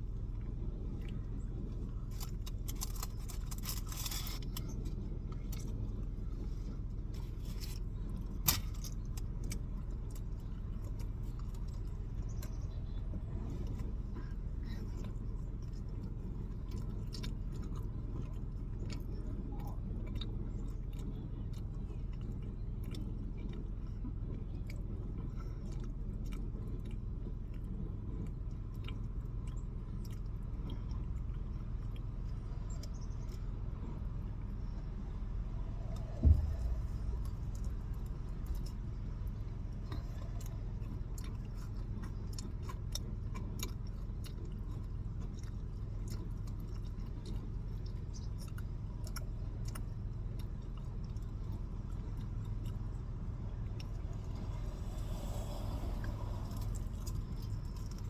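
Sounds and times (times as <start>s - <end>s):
food crunches and clicks: 0.0s - 58.0s
steady low rumble: 0.0s - 58.0s
jangling rustle: 2.1s - 4.8s.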